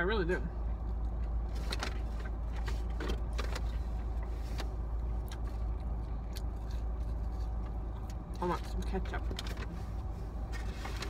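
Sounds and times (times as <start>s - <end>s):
steady low hum: 0.0s - 11.0s
chewing clicks and crinkles: 5.2s - 9.6s.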